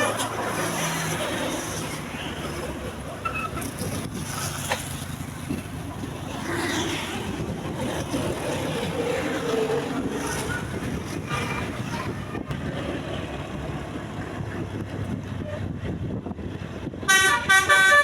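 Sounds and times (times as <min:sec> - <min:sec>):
vehicle engine and road noise: 0:00.0 - 0:18.0.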